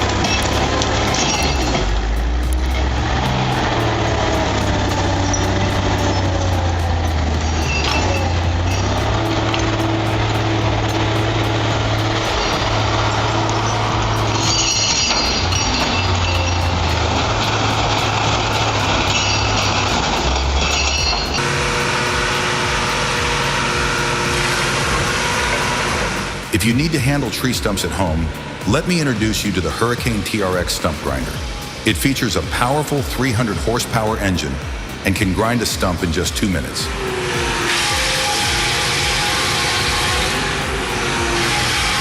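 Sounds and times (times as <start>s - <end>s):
heavy diesel engine under load: 0.0s - 42.0s.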